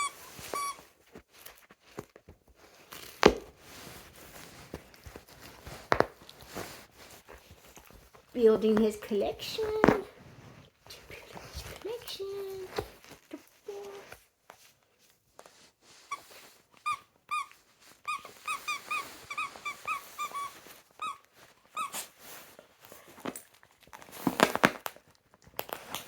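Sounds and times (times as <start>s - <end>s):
squeaky toy squeaks: 0.0s - 1.0s, 16.1s - 22.2s.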